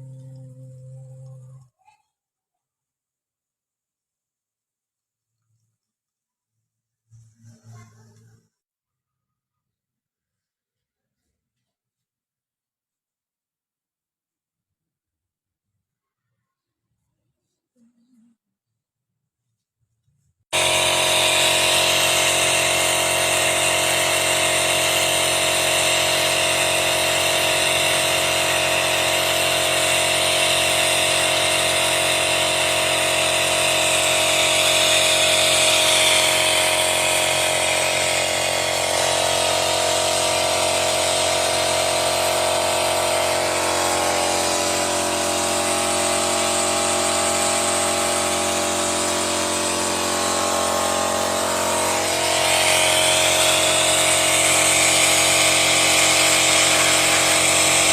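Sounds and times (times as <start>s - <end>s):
machine motor hum and whine: 0.0s - 1.7s, 20.6s - 57.9s.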